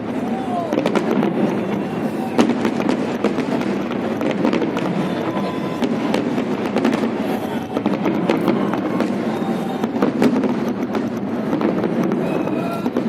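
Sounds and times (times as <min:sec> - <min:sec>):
fireworks bangs and crackles: 0:00.0 - 0:13.0
steady background din: 0:00.0 - 0:13.0.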